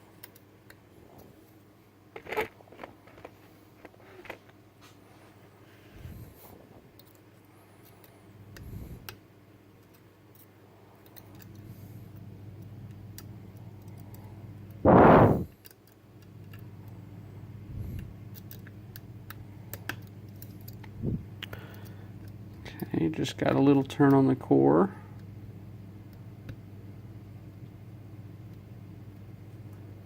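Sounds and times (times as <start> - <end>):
steady low hum: 0.0 - 30.0
loud rush of noise: 14.8 - 15.5.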